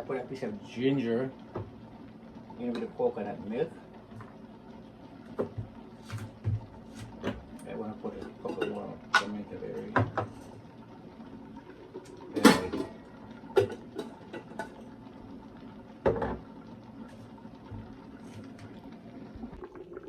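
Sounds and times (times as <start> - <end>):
soup simmering in a pot: 0.4 - 20.0
pot and utensils clanking: 8.2 - 9.3, 12.3 - 13.0.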